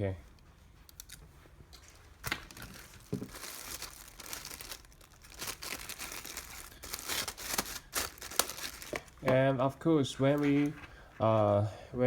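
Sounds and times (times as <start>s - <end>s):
plastic packaging crinkling: 1.8s - 9.3s.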